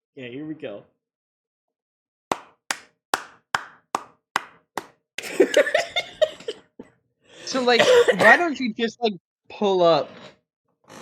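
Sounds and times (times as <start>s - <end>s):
person clapping hands: 2.3s - 5.8s.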